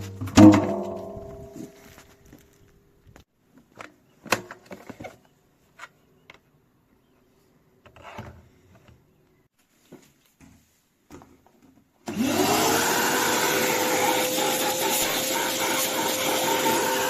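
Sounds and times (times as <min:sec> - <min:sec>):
quiet music: 0:00.0 - 0:03.0.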